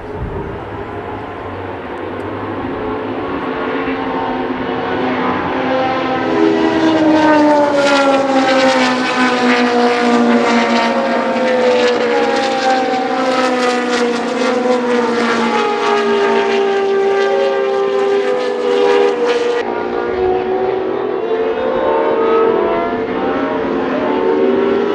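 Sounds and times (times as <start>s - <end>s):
racing car engine howling: 0.0s - 24.9s.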